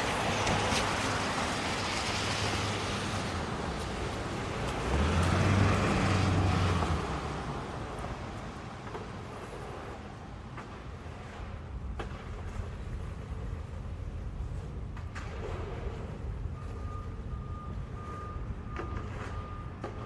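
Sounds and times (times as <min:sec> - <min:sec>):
tyres hissing on wet road: 0:00.0 - 0:11.6
heavy vehicle engine rumbling: 0:00.0 - 0:20.0.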